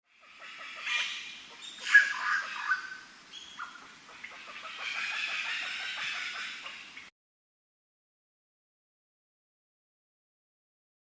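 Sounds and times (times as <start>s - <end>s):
birds chirping and calling: 0.1s - 7.1s.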